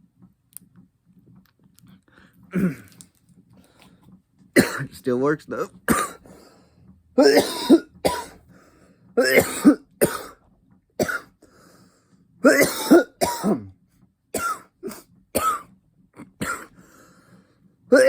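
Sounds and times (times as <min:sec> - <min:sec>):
man coughing: 0:02.5 - 0:02.9, 0:04.6 - 0:05.0, 0:05.6 - 0:06.2, 0:07.2 - 0:08.4, 0:09.2 - 0:10.4, 0:11.0 - 0:11.3, 0:12.4 - 0:13.7, 0:16.3 - 0:16.7
man clearing throat: 0:02.5 - 0:03.0, 0:04.6 - 0:05.0, 0:05.9 - 0:06.2, 0:07.2 - 0:08.4, 0:09.2 - 0:10.4, 0:12.4 - 0:13.7, 0:14.4 - 0:15.6, 0:16.2 - 0:16.7.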